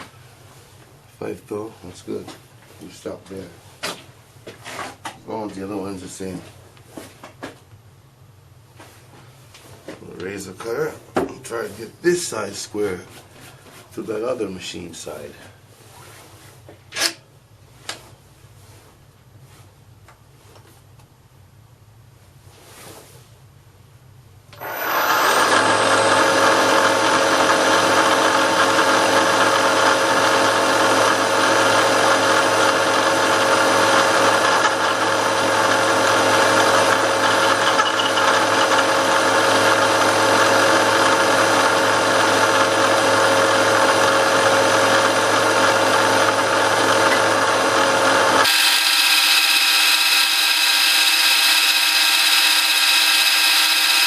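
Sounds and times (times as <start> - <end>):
milling machine cutting metal: 24.6 - 54.0
thin steady machine sound: 36.5 - 39.4, 48.4 - 54.0.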